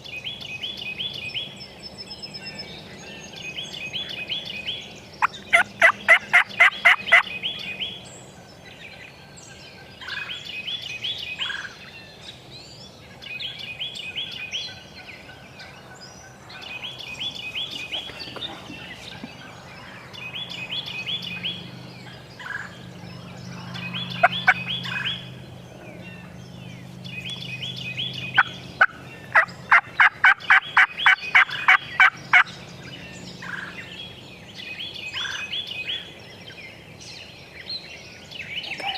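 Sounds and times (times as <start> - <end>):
wild turkey calls: 5.2 - 7.3, 28.3 - 32.6, 33.4 - 33.8.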